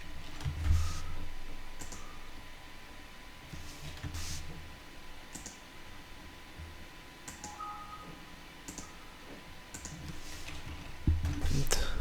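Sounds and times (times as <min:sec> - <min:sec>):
low steady hum: 0:00.0 - 0:12.0
computer mouse clicks: 0:01.8 - 0:02.0, 0:05.3 - 0:05.6, 0:07.3 - 0:07.6, 0:08.7 - 0:08.9, 0:09.7 - 0:10.1.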